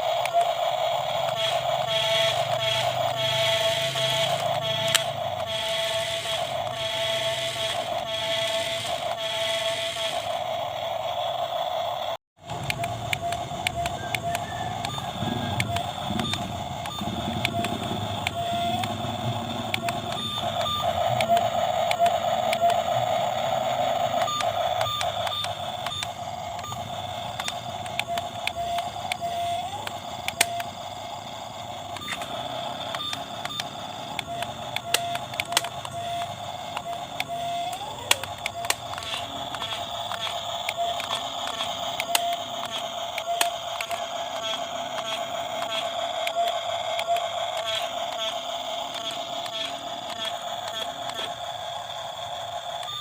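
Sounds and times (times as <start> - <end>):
small electric motor whining: 0.0 - 53.0
plastic clicks and knocks: 12.5 - 23.1, 24.1 - 30.8, 31.8 - 51.4.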